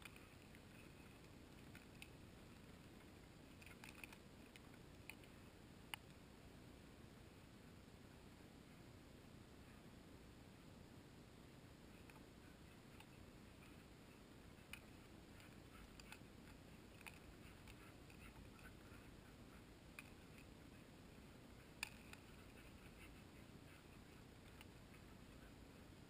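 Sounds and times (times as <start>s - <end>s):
faint sharp clicks: 0.0s - 6.2s.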